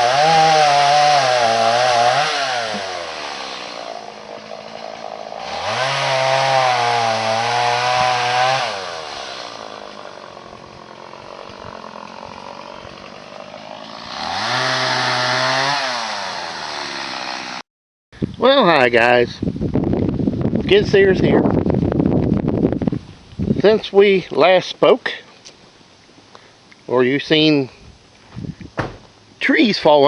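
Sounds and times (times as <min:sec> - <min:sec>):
chainsaw revving and idling: 0:00.0 - 0:17.6.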